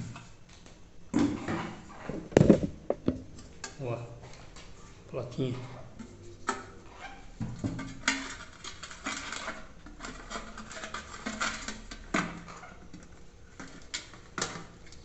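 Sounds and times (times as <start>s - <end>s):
sharp knocks: 2.2s - 3.3s.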